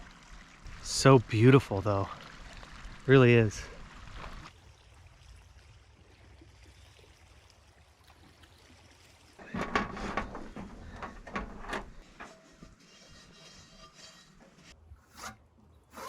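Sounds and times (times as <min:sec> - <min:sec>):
knocks clicks and clatter of gear: 0:09.5 - 0:12.0.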